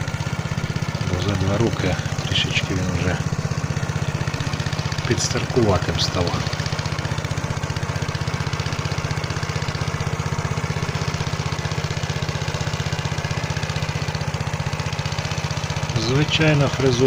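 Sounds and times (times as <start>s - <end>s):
tractor engine putter: 0.0s - 17.0s.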